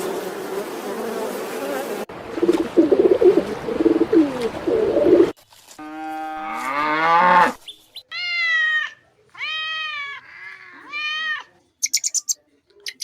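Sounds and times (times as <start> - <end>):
cow mooing: 5.8 - 7.6
cat meowing: 8.1 - 11.6.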